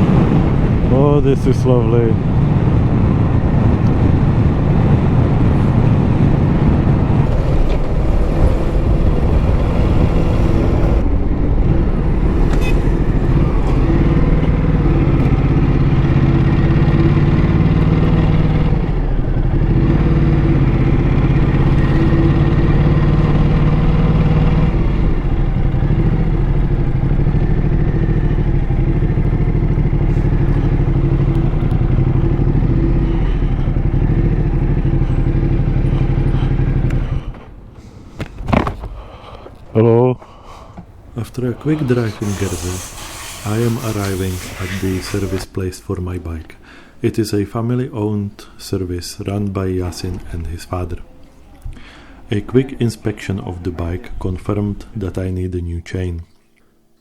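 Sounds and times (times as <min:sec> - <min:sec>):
motorcycle engine running: 0:02.3 - 0:37.6.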